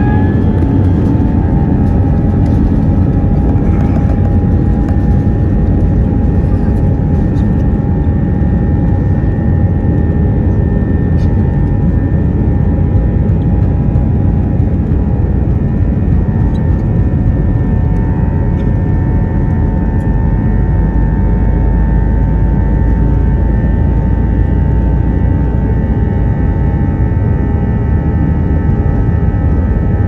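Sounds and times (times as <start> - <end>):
jet engines in cabin: 0.0 - 30.0.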